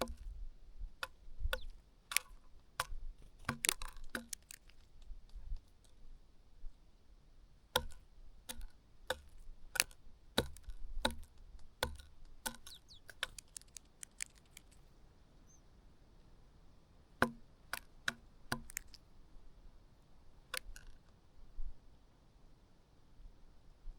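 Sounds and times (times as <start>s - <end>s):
bird pecking at food: 0.0s - 0.4s, 1.0s - 6.0s, 7.8s - 15.6s, 17.2s - 19.1s, 20.4s - 21.1s.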